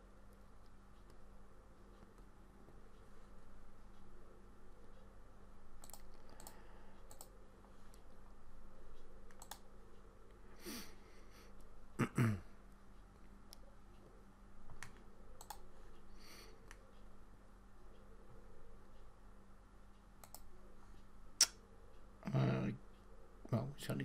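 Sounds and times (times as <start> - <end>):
computer mouse and keyboard clicks: 5.8 - 8.1, 9.0 - 9.7, 14.7 - 15.7, 20.2 - 20.5.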